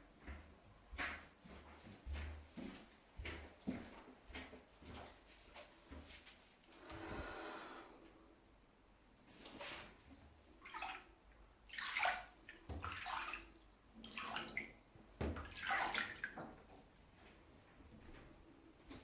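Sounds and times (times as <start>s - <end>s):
water splashing: 10.6s - 17.1s.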